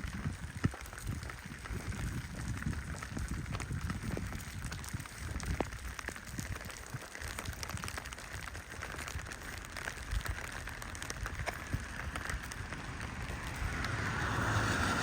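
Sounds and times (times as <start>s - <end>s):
rain falling: 0.0s - 15.0s
sharp raindrop ticks: 0.0s - 15.0s
low rumble: 9.3s - 15.0s.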